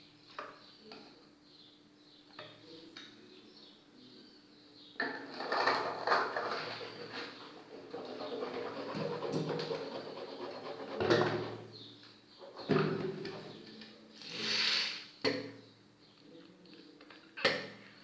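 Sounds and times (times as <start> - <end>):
rustling and clattering: 5.0 - 13.8.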